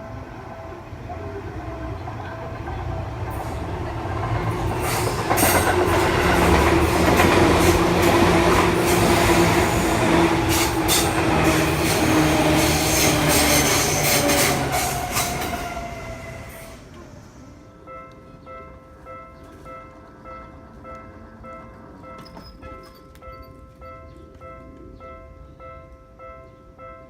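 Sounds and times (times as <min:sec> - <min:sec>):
electric train passing: 0:00.0 - 0:27.0
train wheels clicking over rail joints: 0:02.0 - 0:15.6.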